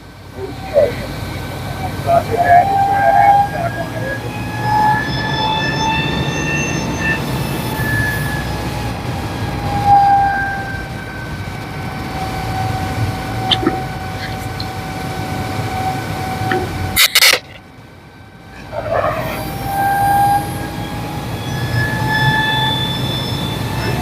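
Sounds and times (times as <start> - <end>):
diesel engine and pump running hard: 0.0 - 24.0
short clicks: 16.5 - 17.6.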